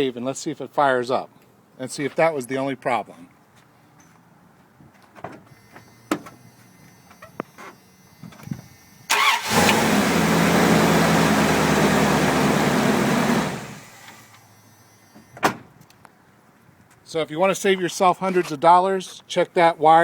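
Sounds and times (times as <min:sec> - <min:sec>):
car engine cranking and running: 0:08.4 - 0:14.8.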